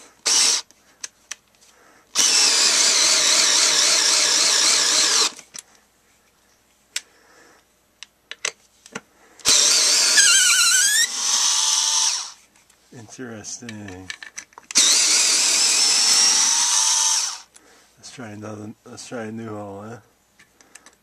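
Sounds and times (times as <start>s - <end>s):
cordless screwdriver whining: 0.0s - 0.7s, 2.1s - 5.4s, 9.4s - 12.4s, 14.7s - 17.5s.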